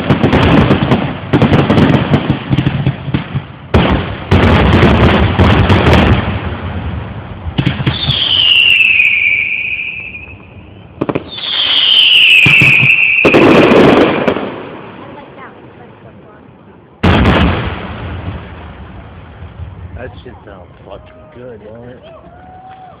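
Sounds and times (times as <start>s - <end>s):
fireworks bangs and crackles: 0.0s - 23.0s
firework whistles dropping in pitch: 7.9s - 13.5s.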